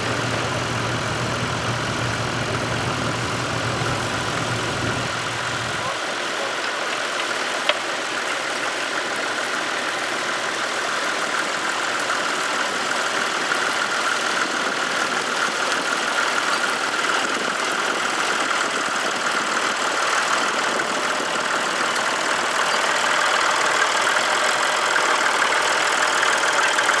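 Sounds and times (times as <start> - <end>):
tractor engine running: 0.0 - 6.0, 17.4 - 27.0.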